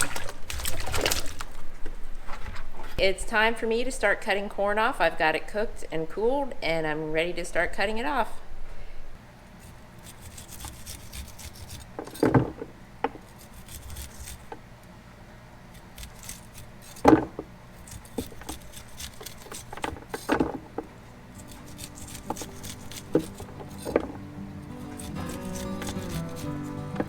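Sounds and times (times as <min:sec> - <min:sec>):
knife scraping corn kernels: 0:09.5 - 0:12.4, 0:13.2 - 0:14.6, 0:15.7 - 0:20.4, 0:21.2 - 0:27.0.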